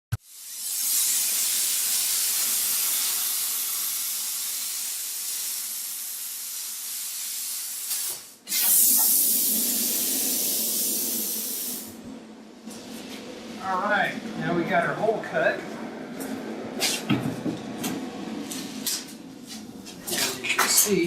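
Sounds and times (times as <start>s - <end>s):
plasma cutter hissing: 0.1s - 12.0s
low hum: 9.6s - 20.5s.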